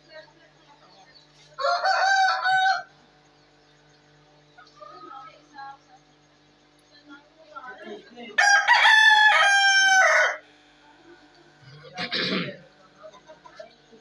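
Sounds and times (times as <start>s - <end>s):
rooster crowing: 1.6s - 2.9s, 8.4s - 10.5s.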